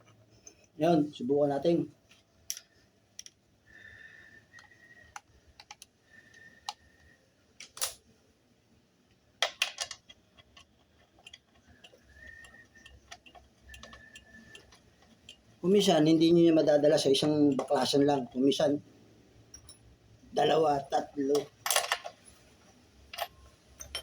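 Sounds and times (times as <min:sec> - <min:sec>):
small hard parts clicking: 0:04.5 - 0:08.0, 0:09.4 - 0:16.0.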